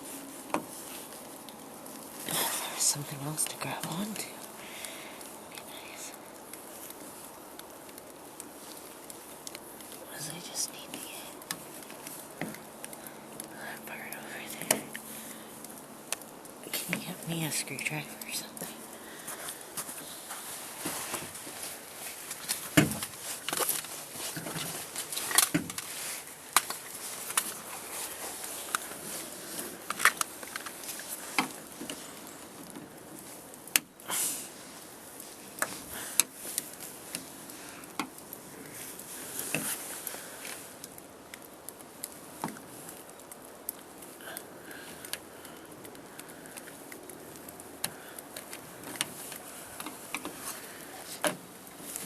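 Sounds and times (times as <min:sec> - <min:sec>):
scraping rustle: 0:07.9 - 0:41.0.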